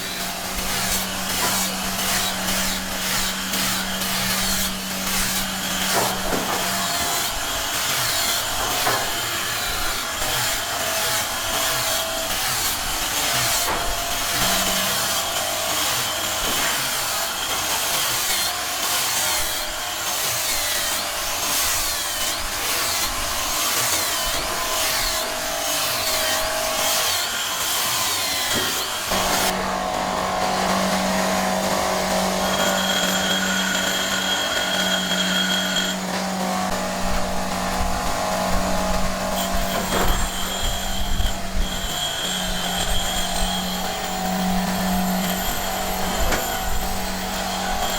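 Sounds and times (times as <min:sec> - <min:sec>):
rasping scraping on wood: 0:00.0 - 0:18.4
power tool motor whine: 0:00.0 - 0:47.9.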